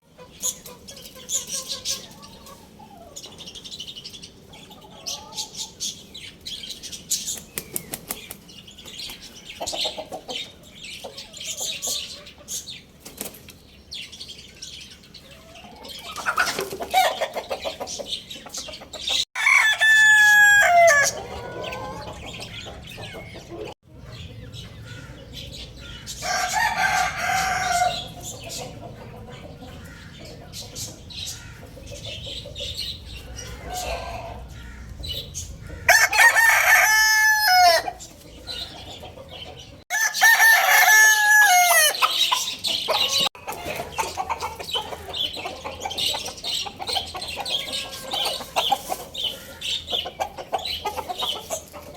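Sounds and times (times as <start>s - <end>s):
small birds chirping: 0.0s - 19.3s, 20.9s - 37.0s, 37.6s - 40.9s, 41.7s - 51.9s
chickens clucking: 0.0s - 51.9s
wings flapping: 7.3s - 8.5s
rooster crowing: 19.4s - 22.2s, 26.2s - 28.1s, 35.8s - 38.0s, 39.9s - 42.0s.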